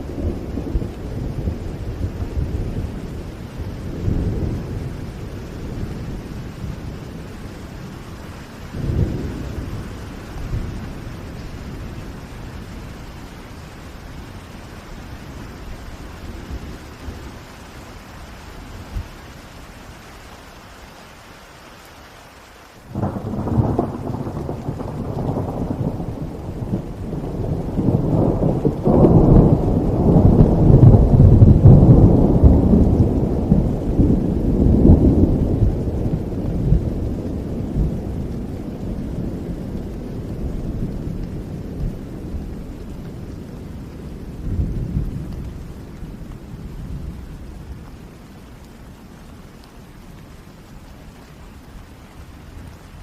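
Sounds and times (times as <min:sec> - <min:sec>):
thunder rumbling: 0:00.0 - 0:19.5, 0:22.8 - 0:50.9
steady rain: 0:00.0 - 0:53.0.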